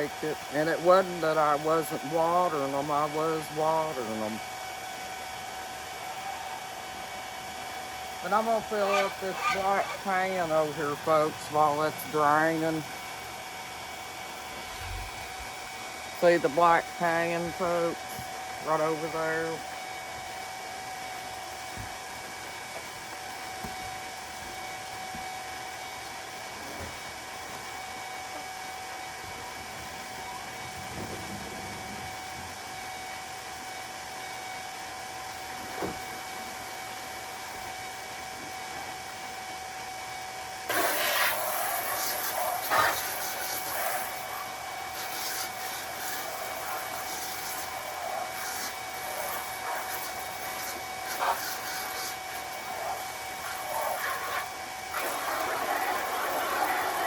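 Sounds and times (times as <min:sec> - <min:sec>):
water running from a hose: 0:08.2 - 0:12.8, 0:40.7 - 0:57.0.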